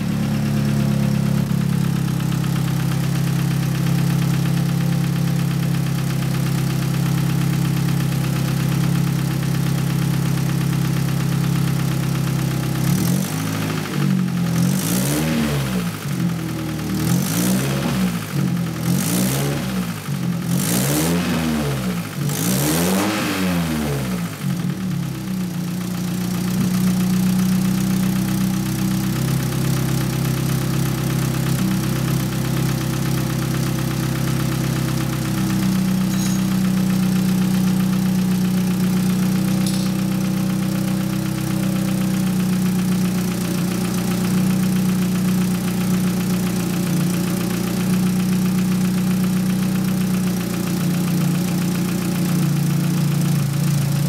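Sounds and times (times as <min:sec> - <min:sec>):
car engine idling: 0:00.0 - 0:14.9, 0:15.8 - 0:19.0, 0:23.9 - 0:54.0
knocking from cylinder head: 0:36.0 - 0:37.0, 0:39.6 - 0:40.4.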